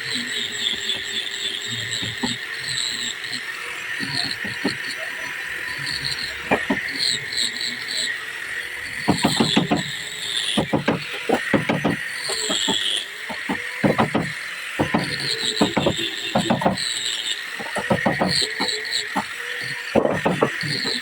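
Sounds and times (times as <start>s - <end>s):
insects chirping: 0.1s - 21.0s
hammering on wood: 2.0s - 2.4s, 4.0s - 4.8s, 6.5s - 6.8s, 9.0s - 16.8s, 17.6s - 21.0s.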